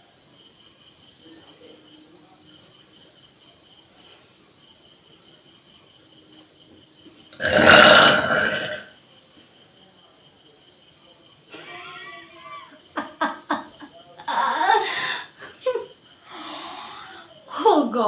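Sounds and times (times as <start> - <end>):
insects chirping: 0.0 - 18.0
woman burping: 7.4 - 8.9.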